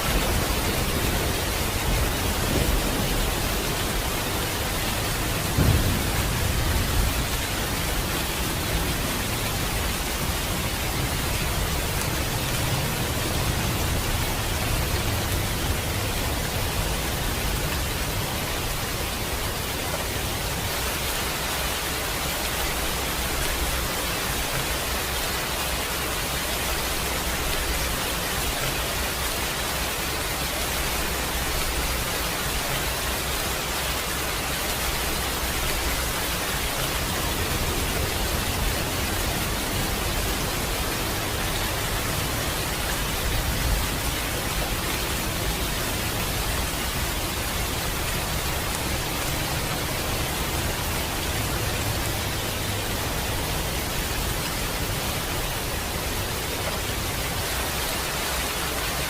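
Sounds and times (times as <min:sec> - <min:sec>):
heavy rain: 0:00.0 - 0:59.0.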